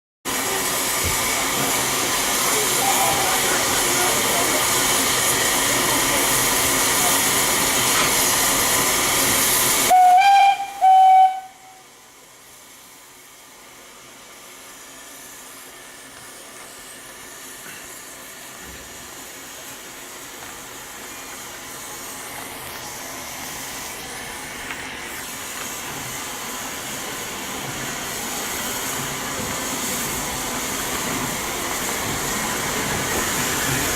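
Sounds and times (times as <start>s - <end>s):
steam locomotive hissing: 0.3s - 33.9s
train rumble: 0.3s - 33.9s
train whistle blasts: 9.8s - 11.9s.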